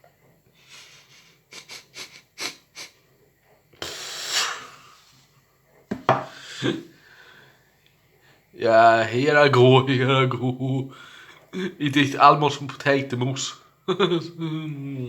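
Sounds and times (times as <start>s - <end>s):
noisy breath out: 0.5s - 3.0s, 3.8s - 5.2s, 6.2s - 8.5s, 10.9s - 11.4s.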